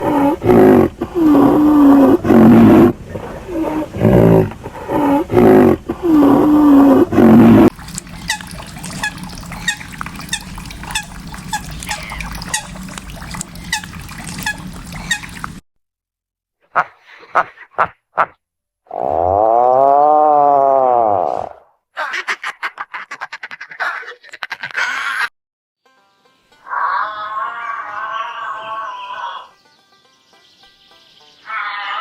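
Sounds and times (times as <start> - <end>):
sliding animal cries: 7.9 - 15.5, 26.7 - 29.5, 31.5 - 32.0.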